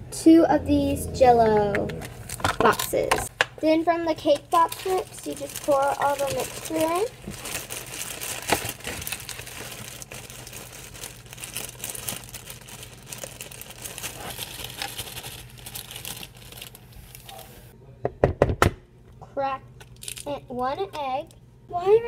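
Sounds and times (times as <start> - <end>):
plastic bag crinkling: 2.0 - 3.2, 4.2 - 17.7, 19.9 - 20.3.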